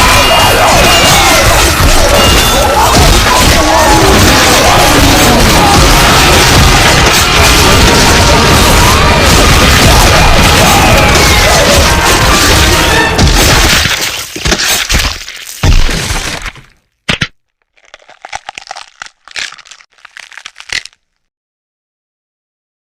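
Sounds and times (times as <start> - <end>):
loud cracking breaking crash: 0.0 - 16.5.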